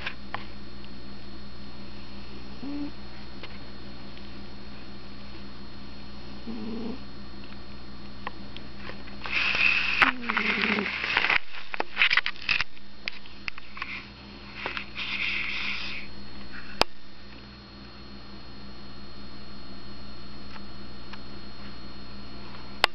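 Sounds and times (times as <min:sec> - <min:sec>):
steady electrical hum: 0:00.0 - 0:22.9
cat snoring: 0:02.6 - 0:03.0, 0:06.4 - 0:07.0, 0:10.1 - 0:11.0.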